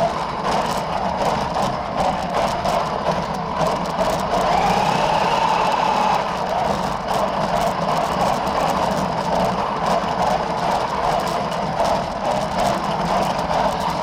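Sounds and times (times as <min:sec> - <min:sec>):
tyres rushing on floor: 0:00.0 - 0:14.0
toy car motor whining: 0:04.4 - 0:06.7.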